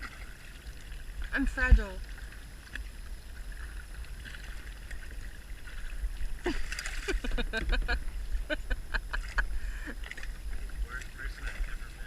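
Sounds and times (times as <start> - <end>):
low rumble: 0.0 - 12.0
paddle splashing water: 0.0 - 12.0.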